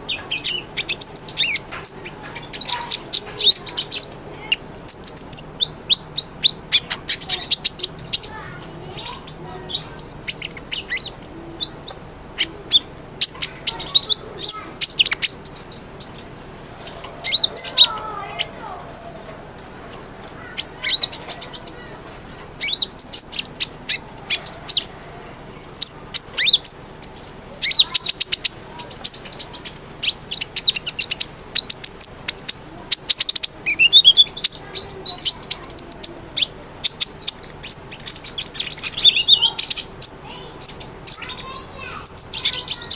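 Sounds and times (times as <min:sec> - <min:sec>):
sunbird singing: 0:00.0 - 0:42.9.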